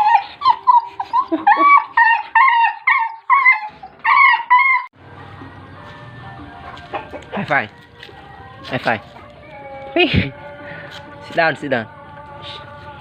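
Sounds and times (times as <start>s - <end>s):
dog whining: 0.0s - 4.9s.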